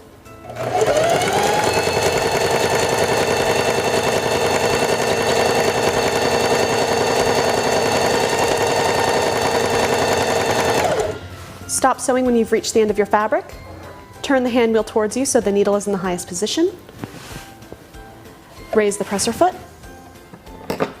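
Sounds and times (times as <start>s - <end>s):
sewing machine running: 0.5s - 11.2s.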